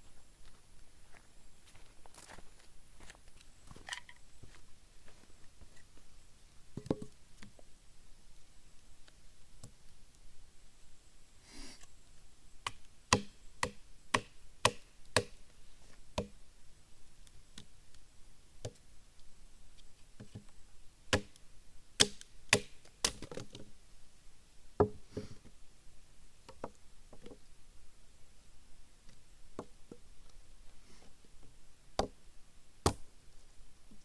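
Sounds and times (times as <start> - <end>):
firewood chopping knocks: 13.1 - 15.4, 21.1 - 21.3, 32.0 - 32.2, 32.8 - 33.0.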